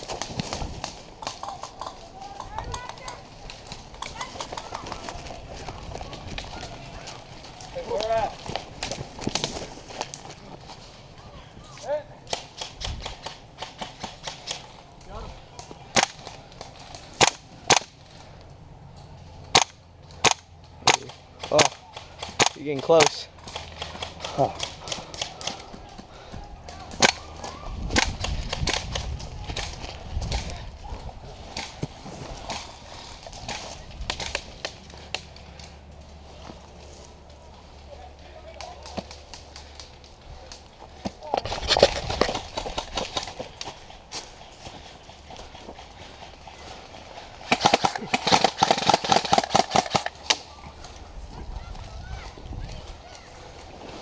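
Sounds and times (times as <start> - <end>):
airsoft gun rapid fire: 47.4 - 50.2.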